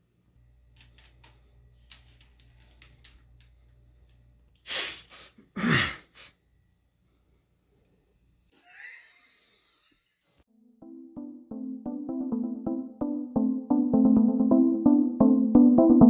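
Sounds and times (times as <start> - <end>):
person sneezing: 4.6 - 6.4.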